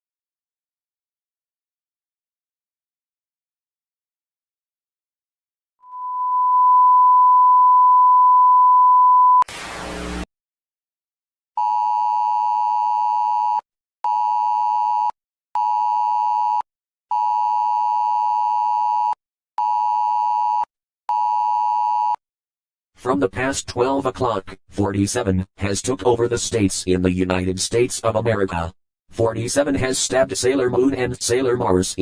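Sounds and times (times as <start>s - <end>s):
steady pure beep: 5.9s - 9.5s
burst of static: 9.4s - 10.3s
buzzing electronic tones: 9.5s - 10.3s.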